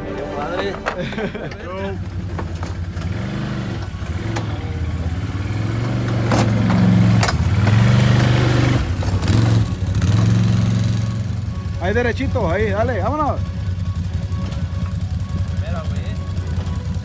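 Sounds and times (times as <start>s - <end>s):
off-road engine revving: 0.0s - 17.0s
sharp clanks: 0.2s - 11.5s.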